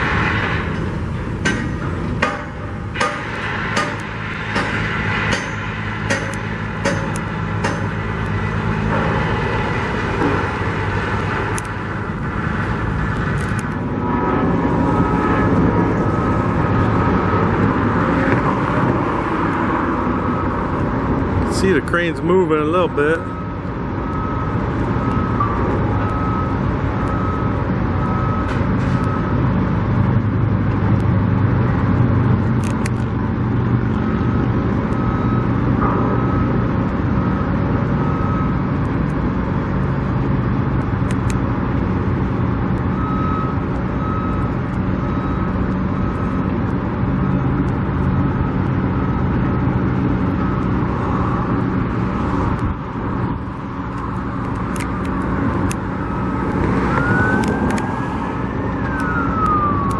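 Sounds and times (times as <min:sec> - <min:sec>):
road noise: 0:00.0 - 0:59.9
vehicle engine rumble: 0:00.0 - 0:59.9
backup alarm beeping: 0:21.5 - 0:29.4, 0:33.9 - 0:38.7, 0:42.8 - 0:49.4, 0:54.0 - 0:59.9.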